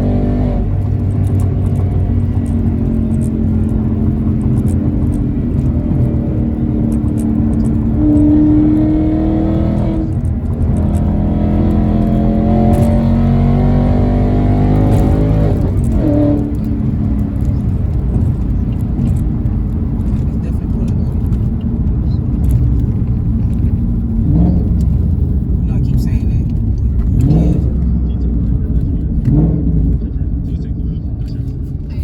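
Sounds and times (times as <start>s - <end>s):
car engine accelerating: 0.0s - 32.0s.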